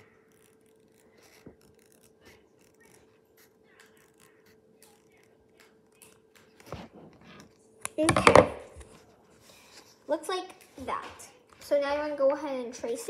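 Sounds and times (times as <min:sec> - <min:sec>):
scissors cutting foam: 0:00.0 - 0:07.5.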